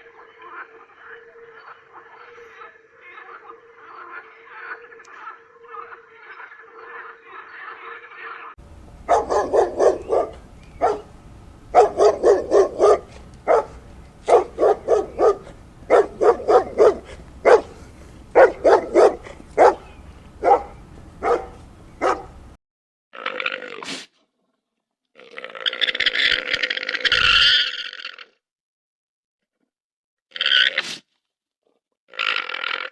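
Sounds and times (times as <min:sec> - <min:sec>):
dog barking: 0:08.7 - 0:22.6.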